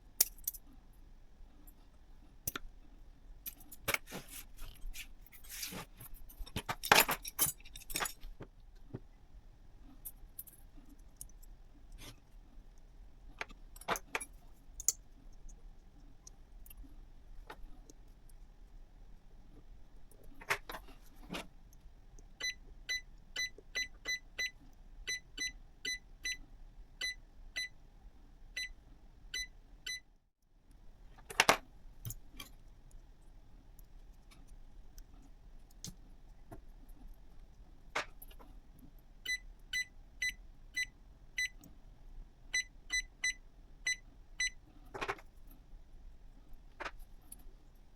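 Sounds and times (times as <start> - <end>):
small hard parts clicking and rattling: 3.4 - 9.0.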